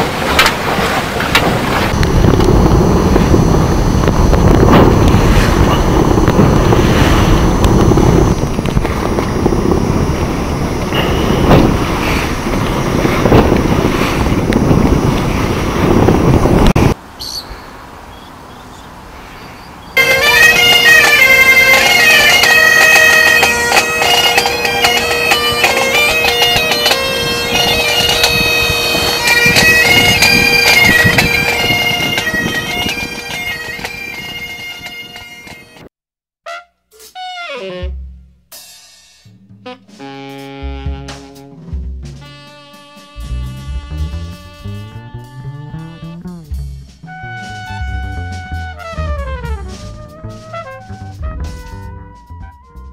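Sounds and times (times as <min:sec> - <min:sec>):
rushing water: 0:00.0 - 0:03.8
rushing wind: 0:00.0 - 0:35.9
drone note under melody: 0:10.8 - 0:12.0, 0:39.4 - 0:52.2.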